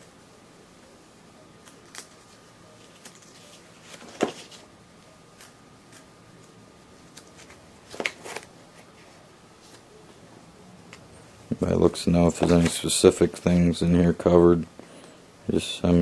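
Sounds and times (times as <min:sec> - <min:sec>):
paper pages being turned: 0:01.6 - 0:04.7, 0:05.4 - 0:09.8, 0:12.3 - 0:13.5.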